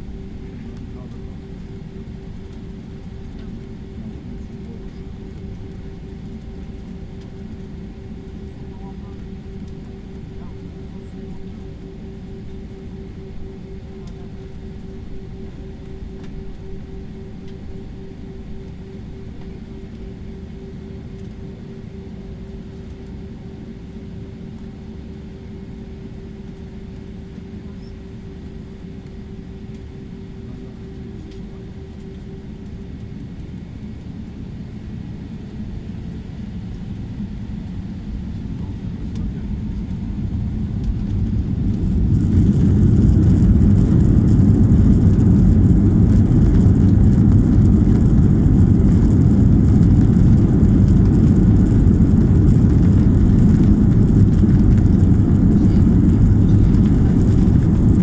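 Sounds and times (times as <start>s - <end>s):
jet engines spooling up: 40.6s - 58.0s.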